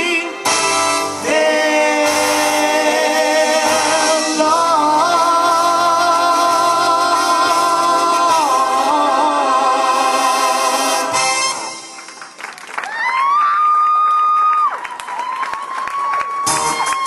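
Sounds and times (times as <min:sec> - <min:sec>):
show tune with singing: 0:00.0 - 0:12.0.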